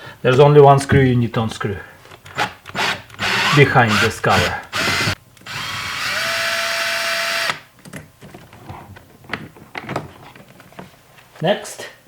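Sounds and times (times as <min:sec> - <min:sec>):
cordless screwdriver running: 0:02.4 - 0:07.6.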